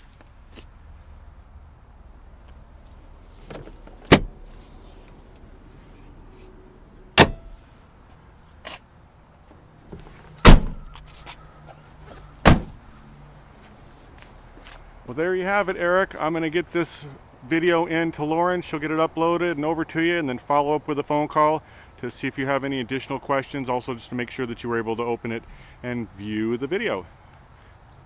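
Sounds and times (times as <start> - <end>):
loud clunks of car parts shutting: 3.4 - 4.4, 7.2 - 7.6, 9.9 - 11.0, 12.4 - 12.8.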